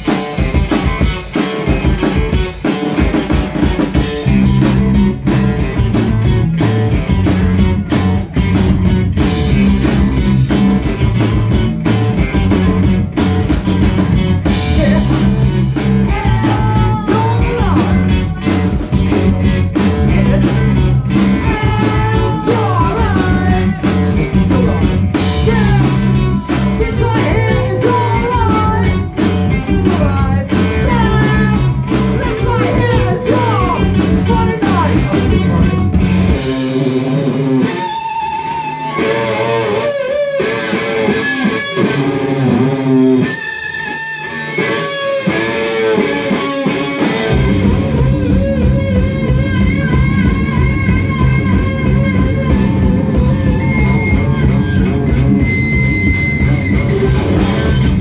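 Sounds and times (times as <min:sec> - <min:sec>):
drums: 0:00.0 - 0:58.0
rock band playing: 0:00.0 - 0:58.0
person singing: 0:14.5 - 0:36.0.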